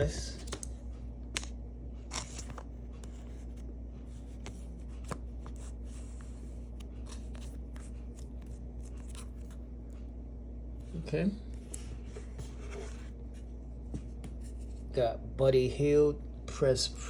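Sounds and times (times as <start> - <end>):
steady low hum: 0.0 - 17.0
cards sliding and scraping: 2.1 - 9.6.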